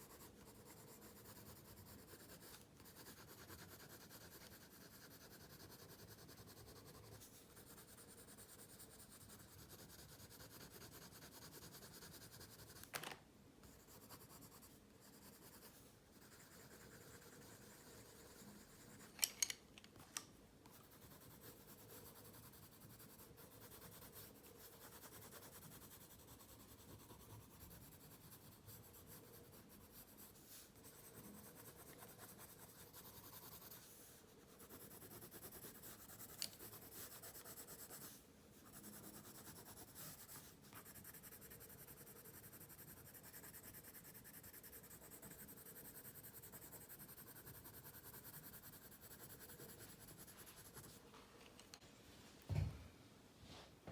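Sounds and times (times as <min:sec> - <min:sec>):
pencil scratching on paper: 0:00.0 - 0:12.9, 0:13.6 - 0:19.2, 0:20.7 - 0:51.0.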